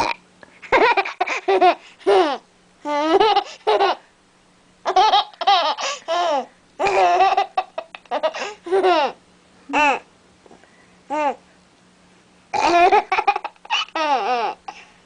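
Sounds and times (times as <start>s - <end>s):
baby giggling and squealing: 12.6s - 14.6s.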